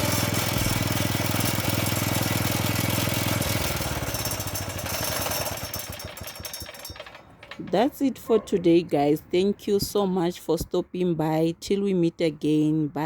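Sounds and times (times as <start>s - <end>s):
generator engine running: 0.0s - 8.0s.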